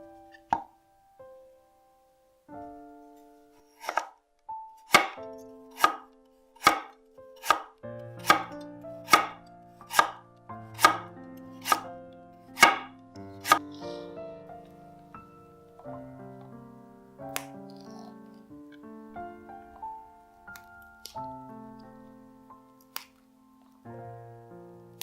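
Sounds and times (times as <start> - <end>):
soft background music: 0.0 - 25.0
knife chopping vegetables: 3.7 - 4.1, 4.8 - 11.9, 12.5 - 14.0.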